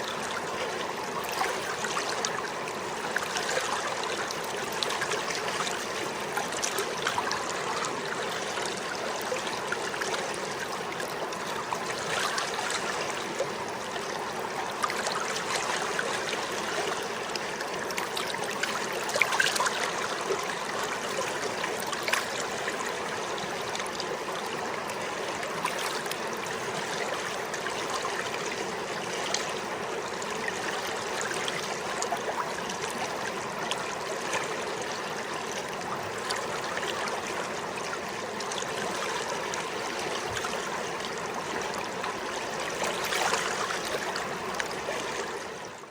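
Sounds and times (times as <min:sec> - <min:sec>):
river water rushing: 0:00.0 - 0:45.9
water splashes: 0:00.0 - 0:45.9.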